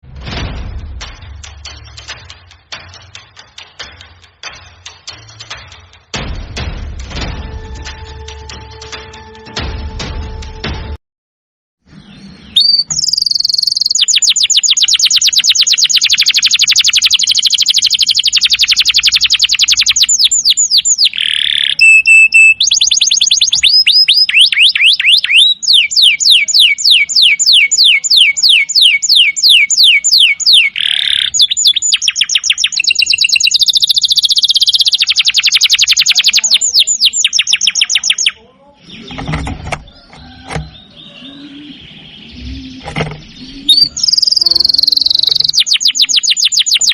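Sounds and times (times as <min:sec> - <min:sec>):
canary singing trills: 0:11.9 - 0:46.9.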